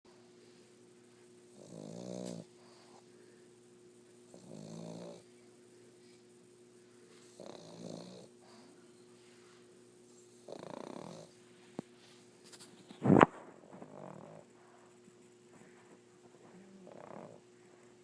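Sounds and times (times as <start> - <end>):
dog snoring: 1.5 - 3.0, 4.3 - 5.3, 7.3 - 8.7, 10.3 - 11.4, 13.2 - 14.5, 16.4 - 17.5.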